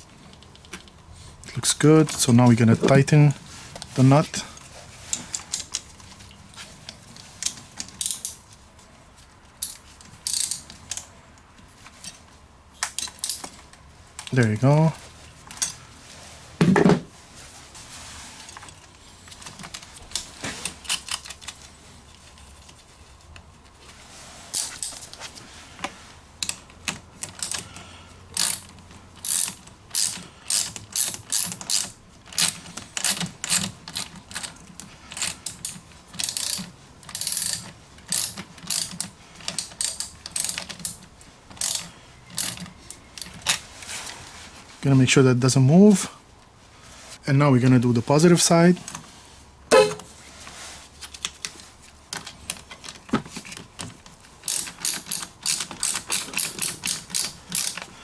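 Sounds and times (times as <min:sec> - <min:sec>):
ratchet wrench clicking: 0:09.6 - 0:10.6, 0:28.4 - 0:33.6, 0:36.2 - 0:39.0, 0:54.5 - 0:57.8
knock: 0:16.6 - 0:17.1.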